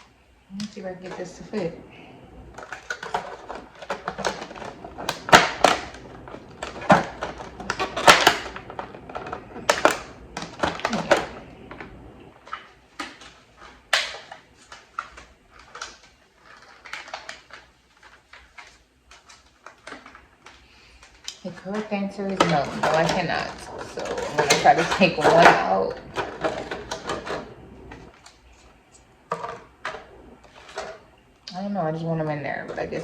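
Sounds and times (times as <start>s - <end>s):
takeout container clicking and clattering: 2.6s - 20.6s, 21.2s - 28.4s.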